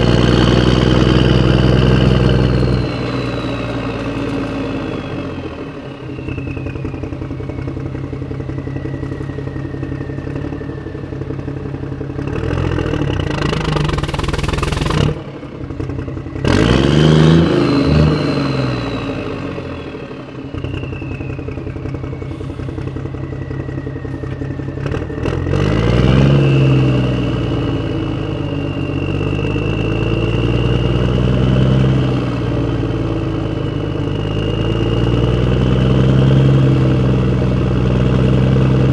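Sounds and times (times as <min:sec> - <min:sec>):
vehicle engine revving: 0:00.0 - 0:28.3
thin high whine: 0:20.6 - 0:25.6.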